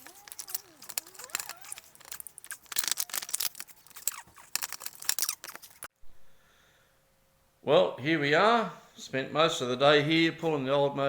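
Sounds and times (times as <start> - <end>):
brief squeaks: 0.0 - 5.9
hand tools and metal parts clattering: 0.0 - 5.9.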